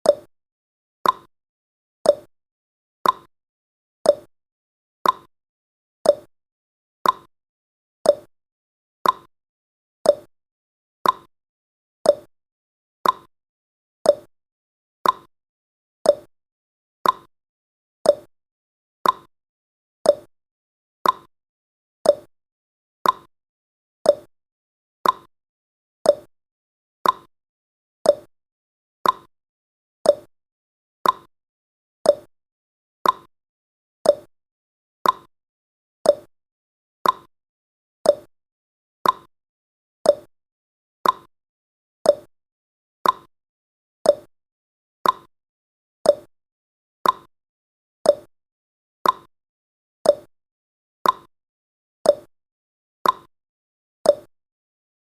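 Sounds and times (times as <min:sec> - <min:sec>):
clock-like timer ticking: 0:01.0 - 0:01.3, 0:02.1 - 0:02.3, 0:03.0 - 0:03.3, 0:04.1 - 0:04.3, 0:05.0 - 0:05.3, 0:06.1 - 0:06.3, 0:07.0 - 0:07.3, 0:08.1 - 0:08.3, 0:09.0 - 0:09.3, 0:10.1 - 0:10.3, 0:11.0 - 0:11.3, 0:12.1 - 0:12.3, 0:13.0 - 0:13.3, 0:14.1 - 0:14.3, 0:15.0 - 0:15.3, 0:16.1 - 0:16.3, 0:17.0 - 0:17.3, 0:18.1 - 0:18.3, 0:19.0 - 0:19.3, 0:20.1 - 0:20.3, 0:21.0 - 0:21.3, 0:22.1 - 0:22.3, 0:23.0 - 0:23.3, 0:24.1 - 0:24.3, 0:25.0 - 0:25.3, 0:26.1 - 0:26.3, 0:27.0 - 0:27.3, 0:28.0 - 0:28.3, 0:29.0 - 0:29.3, 0:30.1 - 0:30.3, 0:31.0 - 0:31.3, 0:32.1 - 0:32.3, 0:33.0 - 0:33.3, 0:34.0 - 0:34.3, 0:35.0 - 0:35.3, 0:36.1 - 0:36.3, 0:37.0 - 0:37.3, 0:38.1 - 0:38.3, 0:39.0 - 0:39.3, 0:40.1 - 0:40.3, 0:41.0 - 0:41.3, 0:42.1 - 0:42.3, 0:43.0 - 0:43.3, 0:44.1 - 0:44.3, 0:45.0 - 0:45.3, 0:46.1 - 0:46.3, 0:47.0 - 0:47.3, 0:48.1 - 0:48.3, 0:49.0 - 0:49.3, 0:50.1 - 0:50.3, 0:51.0 - 0:51.3, 0:52.1 - 0:52.3, 0:53.0 - 0:53.3, 0:54.1 - 0:54.3.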